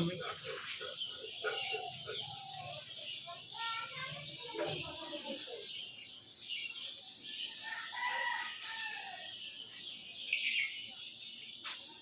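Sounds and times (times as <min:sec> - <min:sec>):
high background chirring: 0:00.0 - 0:12.0
rooster crowing: 0:07.6 - 0:09.4.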